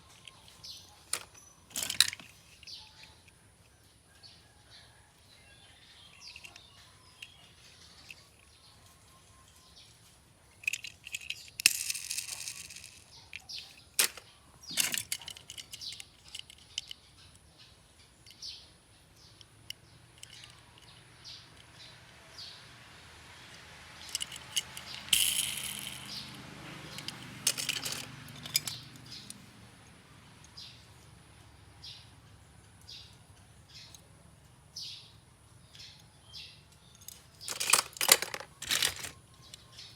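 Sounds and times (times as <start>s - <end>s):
toy car parts clicking: 0.0s - 3.4s, 10.6s - 17.5s, 19.3s - 21.9s, 23.5s - 29.4s, 36.7s - 39.9s
toy car rolling or scraping: 0.1s - 2.8s, 9.5s - 17.0s, 20.1s - 21.9s, 23.5s - 29.4s, 37.0s - 39.9s.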